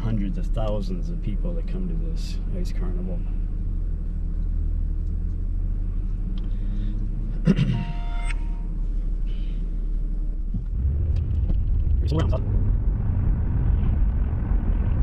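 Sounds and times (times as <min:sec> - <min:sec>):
car engine and road rumble: 0:00.0 - 0:15.0
brief held tones: 0:07.7 - 0:08.8.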